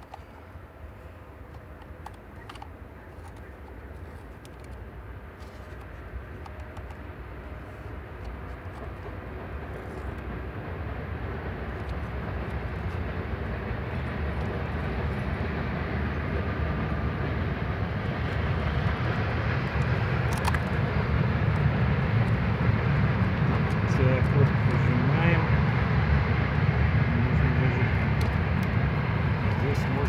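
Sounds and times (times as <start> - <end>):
low engine rumble: 6.0 - 30.0.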